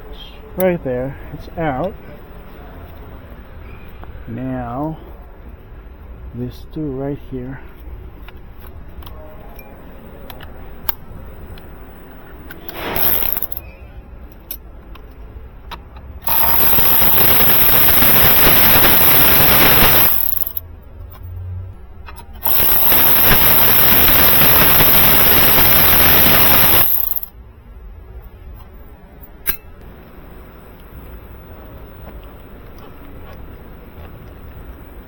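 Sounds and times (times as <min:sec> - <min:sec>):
power tool running: 0:12.8 - 0:13.6, 0:16.2 - 0:20.6, 0:22.4 - 0:27.3.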